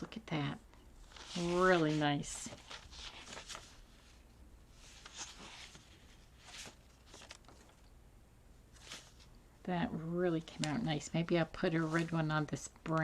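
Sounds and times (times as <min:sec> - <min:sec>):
faint paper rustles: 0:01.0 - 0:08.0, 0:08.7 - 0:09.4, 0:10.4 - 0:13.0.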